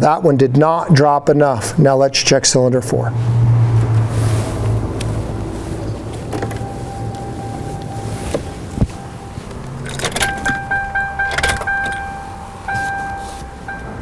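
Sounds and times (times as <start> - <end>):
low hum: 3.1 - 14.0
connectors and tools rattling: 4.7 - 14.0
steady high whine: 4.9 - 14.0.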